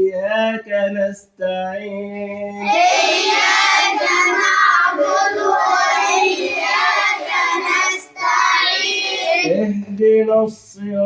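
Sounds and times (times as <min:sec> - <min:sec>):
person reciting: 0:00.0 - 0:11.0
crowd calling out together: 0:02.6 - 0:09.5.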